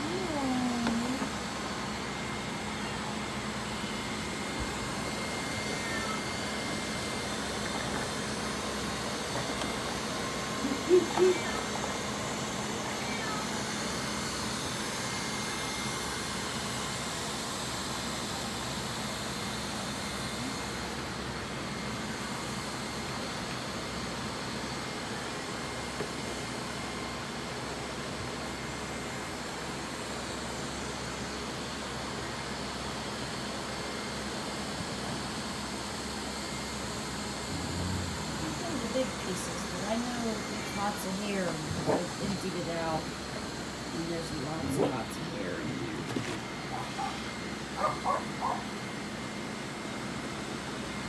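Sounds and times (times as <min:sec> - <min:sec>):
robot vacuum whirring: 0:00.0 - 0:01.5, 0:37.5 - 0:48.6.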